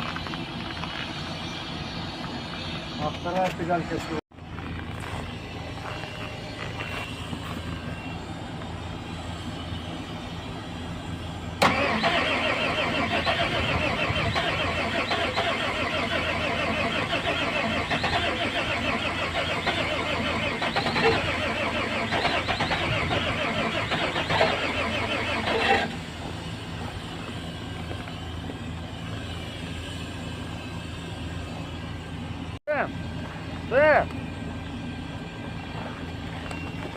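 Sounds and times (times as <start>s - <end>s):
low engine hum: 0.0s - 36.9s
diesel engine cranking on starter: 11.4s - 31.0s.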